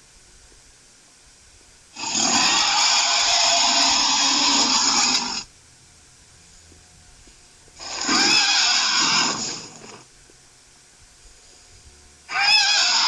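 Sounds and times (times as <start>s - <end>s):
monster roar: 2.0s - 5.4s, 7.8s - 10.0s, 12.3s - 13.0s.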